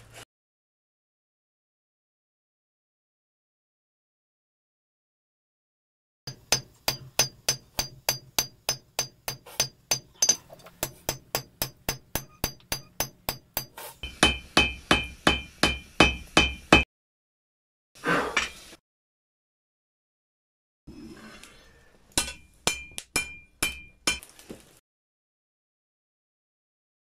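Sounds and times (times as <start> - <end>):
hammer ringing on anvil: 6.3 - 10.4, 11.1 - 16.8, 22.2 - 24.2.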